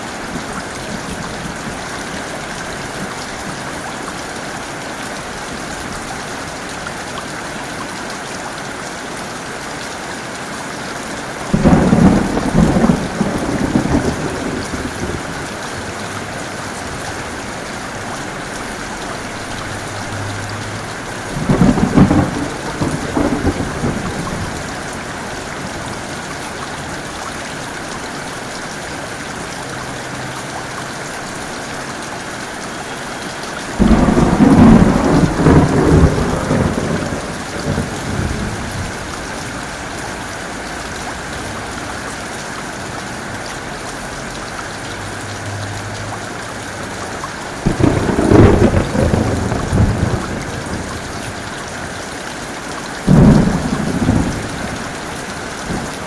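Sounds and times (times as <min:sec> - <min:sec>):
heavy rain: 0:00.0 - 0:56.0
thunder claps rumbling: 0:11.5 - 0:26.2, 0:33.7 - 0:39.4, 0:47.6 - 0:51.6, 0:53.0 - 0:56.0.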